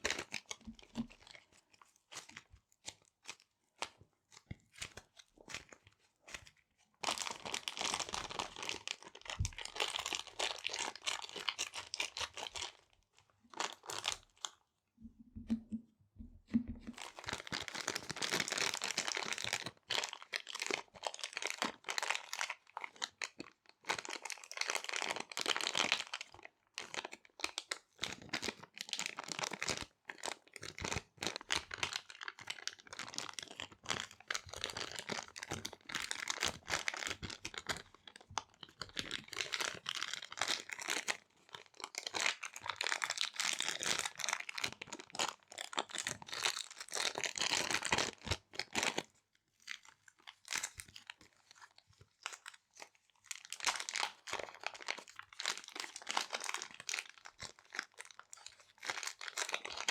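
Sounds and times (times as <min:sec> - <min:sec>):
plastic bags crinkling: 0:53.3 - 0:59.9.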